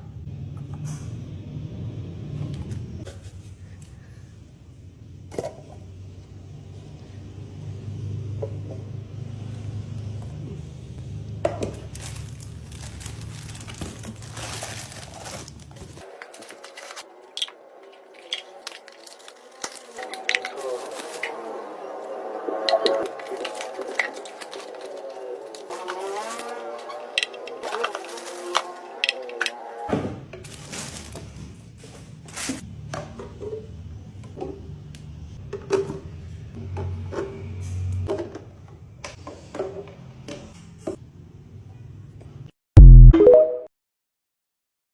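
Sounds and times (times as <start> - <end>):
plastic packaging crinkling and tearing: 11.7 - 21.6, 23.1 - 28.9, 30.4 - 31.4.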